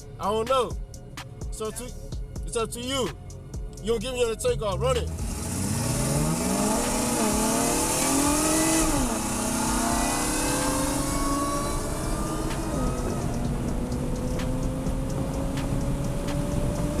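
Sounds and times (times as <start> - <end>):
car engine at full throttle: 4.5 - 17.0.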